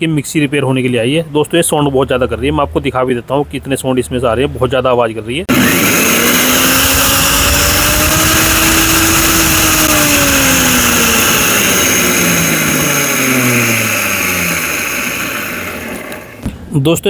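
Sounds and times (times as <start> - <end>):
mixer grinder motor running: 5.5 - 16.6.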